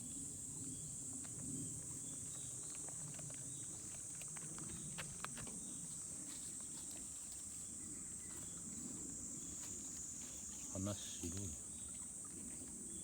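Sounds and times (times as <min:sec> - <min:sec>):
insect chorus chirring: 0:09.2 - 0:12.0.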